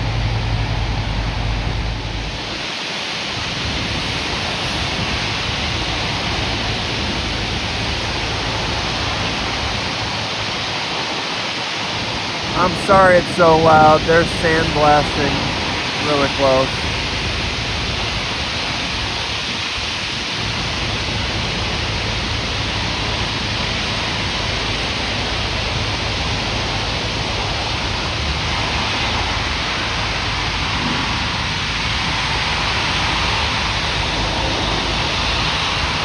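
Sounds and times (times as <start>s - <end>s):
low rumble: 0.0s - 2.6s.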